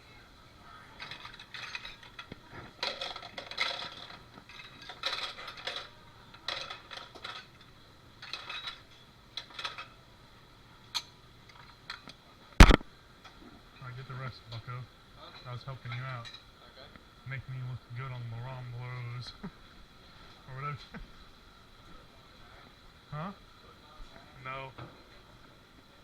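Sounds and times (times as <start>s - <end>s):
dishes and cutlery clattering: 1.0s - 9.9s
loud sharp bang: 12.6s - 12.8s.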